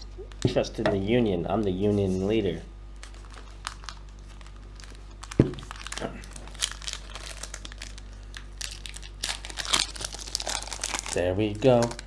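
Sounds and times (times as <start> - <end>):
plastic wrappers crinkling and tearing: 3.0 - 12.0.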